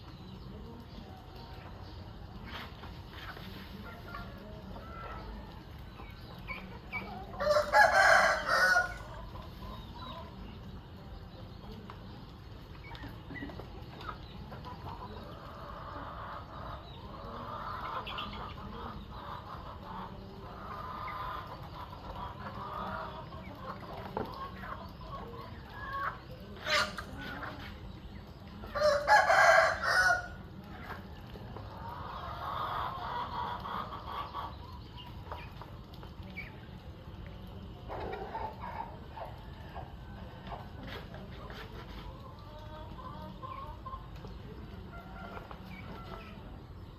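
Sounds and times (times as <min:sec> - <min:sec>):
hen clucking: 0:00.2 - 0:11.0, 0:11.7 - 0:36.7, 0:37.5 - 0:46.9
rooster crowing: 0:07.4 - 0:09.1, 0:28.8 - 0:30.4.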